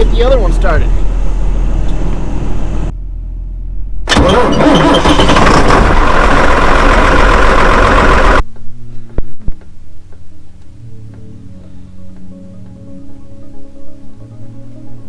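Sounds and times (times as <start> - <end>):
tractor diesel engine idling: 0.0 - 8.4
diesel engine cranking and starting: 0.2 - 8.4.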